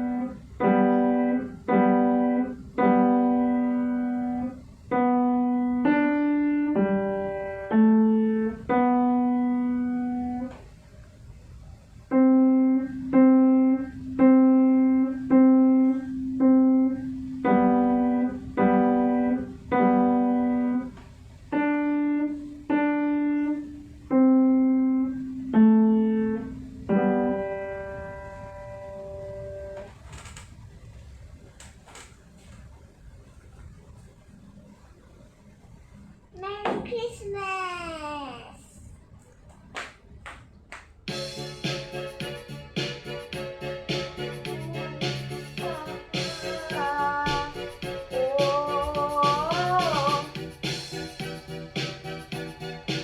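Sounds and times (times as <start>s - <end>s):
slow piano melody: 0.0s - 10.8s, 12.0s - 29.9s, 41.1s - 53.0s.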